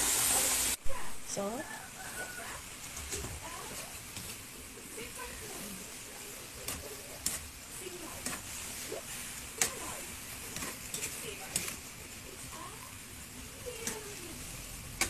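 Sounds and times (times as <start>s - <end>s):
food sizzling in a pan: 0.0s - 15.0s
utensil clicking against pan: 6.6s - 7.6s, 8.2s - 8.6s, 9.4s - 12.0s, 13.6s - 15.0s.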